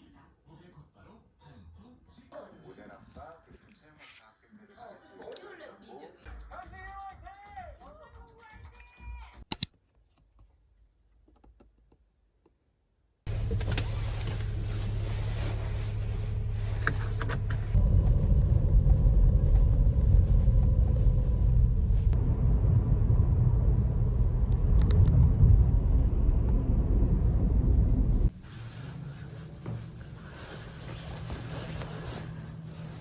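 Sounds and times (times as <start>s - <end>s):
vehicle rumble in motion: 13.3s - 33.0s.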